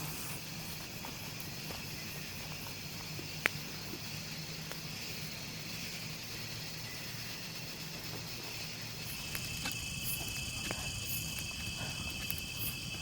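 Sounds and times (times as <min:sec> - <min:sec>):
high insect hum: 0:00.0 - 0:13.0
low drone: 0:00.0 - 0:13.0.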